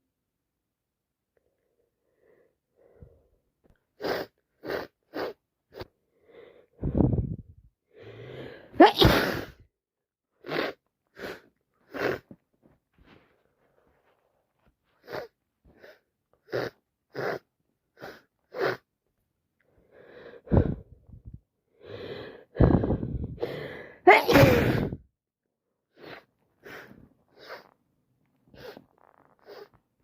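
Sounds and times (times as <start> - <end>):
person sniffing: 4.0 - 5.9, 10.4 - 12.3, 15.0 - 18.8, 21.8 - 25.0, 25.9 - 27.8, 28.5 - 29.8
gasping in-breath: 6.1 - 8.8, 19.7 - 25.0
person sneezing: 8.8 - 9.6, 22.7 - 25.0.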